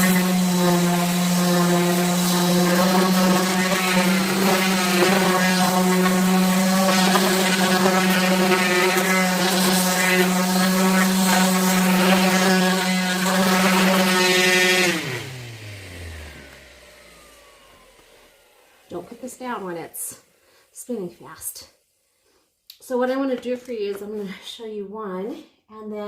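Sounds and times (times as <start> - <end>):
orbital sander sanding wood: 0.0 - 19.9.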